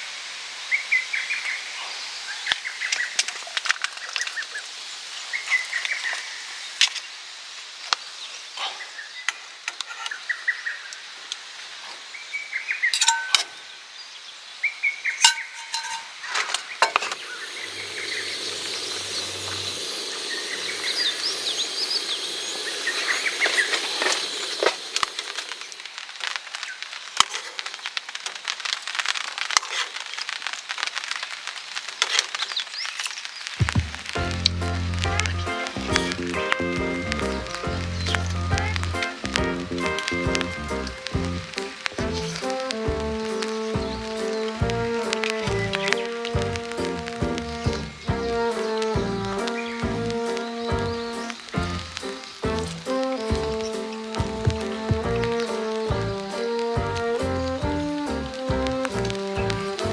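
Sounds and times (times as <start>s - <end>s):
steady hiss: 0.0s - 59.9s
small birds chirping: 0.6s - 27.7s, 32.4s - 59.9s
cooking gear clinking: 13.0s - 13.6s, 15.2s - 17.2s.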